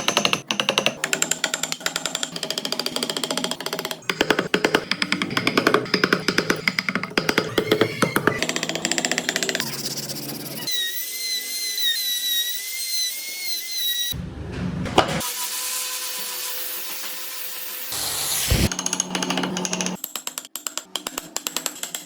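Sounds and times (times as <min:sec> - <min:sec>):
power tools working wood: 0:00.0 - 0:14.2, 0:15.2 - 0:20.0
steady tool hum: 0:17.8 - 0:18.7.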